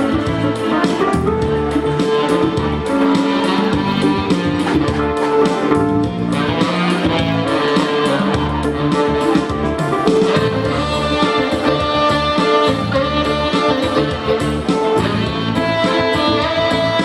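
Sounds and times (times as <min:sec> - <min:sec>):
instrumental guitar band music: 0:00.0 - 0:17.0.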